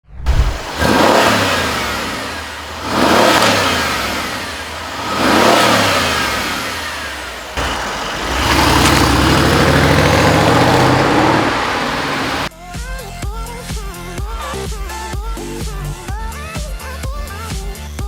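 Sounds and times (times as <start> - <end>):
car engine revving: 0.3 - 12.5.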